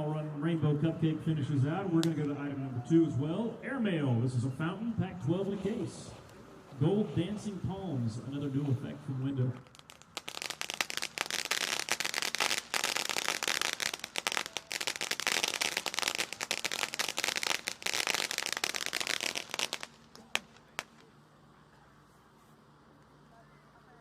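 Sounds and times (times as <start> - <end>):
firework fountains crackling: 5.3 - 22.1
firework pops: 9.6 - 21.1.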